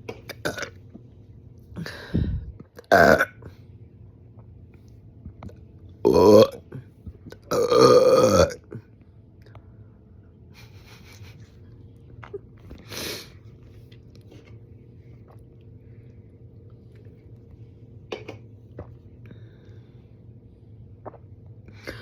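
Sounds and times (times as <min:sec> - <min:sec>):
person burping: 0:00.3 - 0:00.8, 0:02.8 - 0:03.4, 0:06.0 - 0:06.8, 0:07.4 - 0:08.8.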